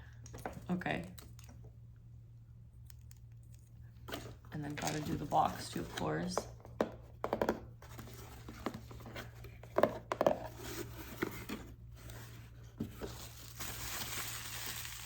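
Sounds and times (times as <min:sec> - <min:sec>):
scratching on box surface: 0:07.8 - 0:13.7.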